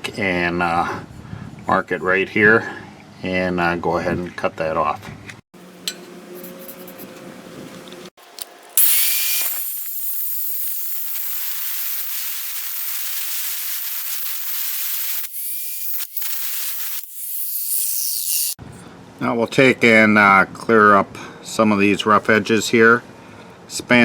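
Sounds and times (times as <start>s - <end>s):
power tool cutting pipe: 8.8s - 18.6s.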